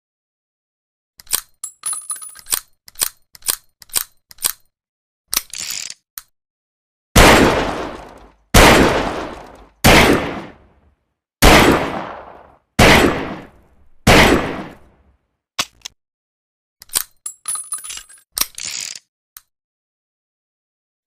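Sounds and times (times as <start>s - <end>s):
revolver gunshots ringing: 7.2s - 10.7s, 11.4s - 14.9s.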